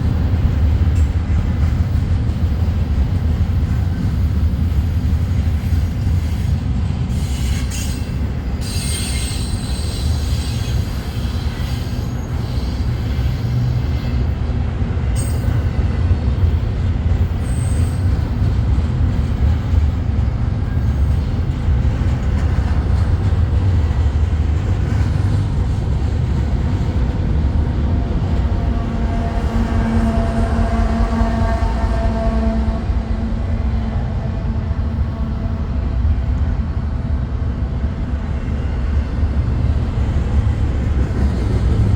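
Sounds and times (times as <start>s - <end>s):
steel wheels rumbling on rail: 0.0s - 41.9s.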